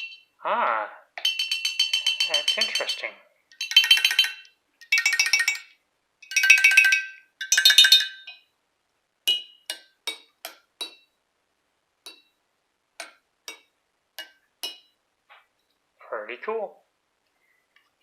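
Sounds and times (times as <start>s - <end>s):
glass jars struck with a stick: 0.0s - 0.3s, 1.2s - 8.5s, 9.3s - 11.2s, 12.1s - 12.4s, 13.0s - 15.0s.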